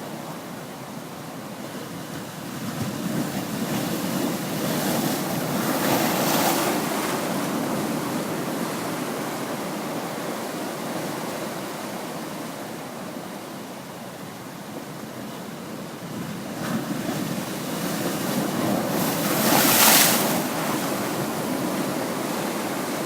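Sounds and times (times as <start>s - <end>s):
waves breaking against cliffs: 16.3s - 23.0s.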